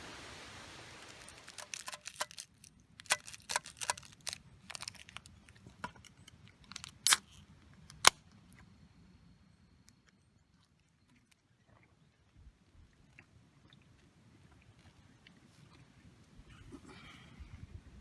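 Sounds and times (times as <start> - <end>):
small objects clicking and knocking: 1.0 - 8.1.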